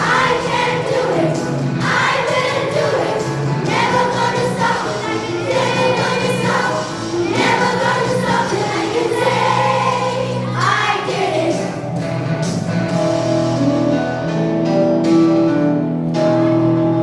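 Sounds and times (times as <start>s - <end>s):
choir singing: 0.0s - 11.9s
musical accompaniment: 0.0s - 17.0s.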